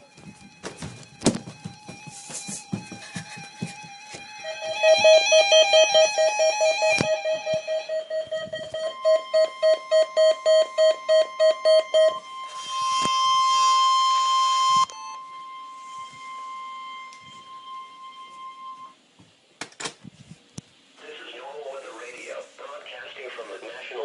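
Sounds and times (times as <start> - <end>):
single-pitched warning tone: 7.3 - 13.1.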